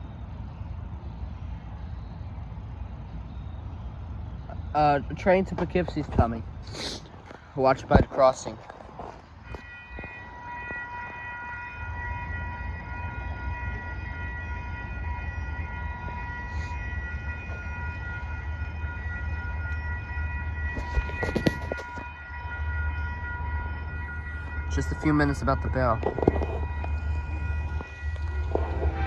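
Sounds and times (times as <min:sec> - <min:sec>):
train rumbling: 0:00.0 - 0:29.0
railroad crossing bell ringing: 0:09.4 - 0:29.0.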